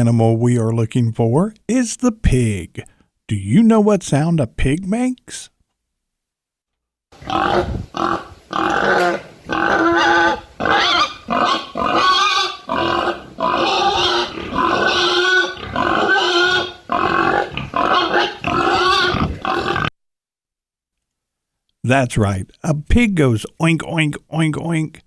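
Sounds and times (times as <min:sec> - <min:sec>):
pig grunting and oinking: 0:07.2 - 0:19.9.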